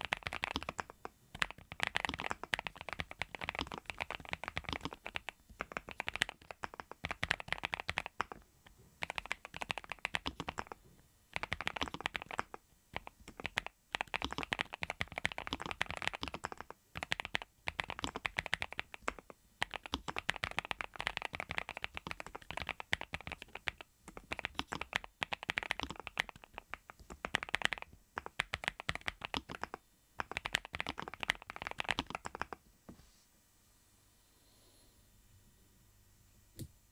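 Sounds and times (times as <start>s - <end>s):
mechanical keyboard typing: 0.0s - 8.4s, 9.0s - 32.6s.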